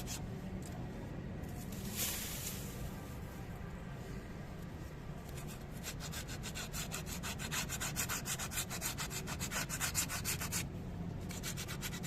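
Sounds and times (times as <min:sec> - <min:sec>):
sandpaper rasping on metal: 0:05.4 - 0:10.6, 0:11.3 - 0:12.0.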